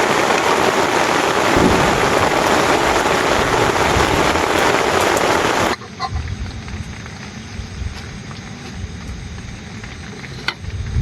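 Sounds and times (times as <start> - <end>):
storm rushing noise: 1.2 - 5.8
low rumble: 1.5 - 5.6.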